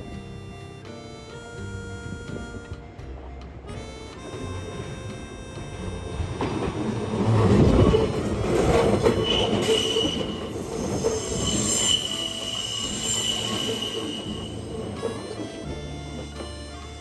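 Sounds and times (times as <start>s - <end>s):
train rumble: 0.0s - 17.0s
train wheels squealing: 3.8s - 16.7s.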